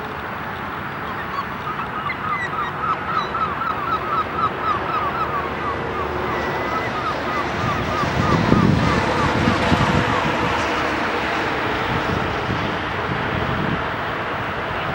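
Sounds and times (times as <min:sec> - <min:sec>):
geese honking: 0:01.2 - 0:11.1.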